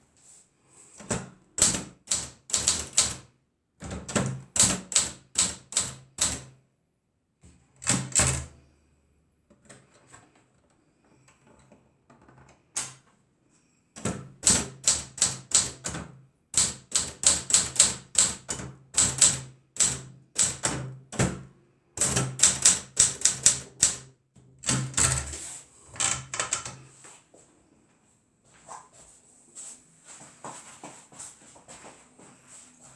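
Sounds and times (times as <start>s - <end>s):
manual typewriter keystrokes: 1.6s - 3.3s, 4.1s - 6.5s, 7.8s - 8.5s, 14.0s - 16.0s, 16.6s - 21.3s, 22.0s - 25.3s, 26.0s - 26.8s.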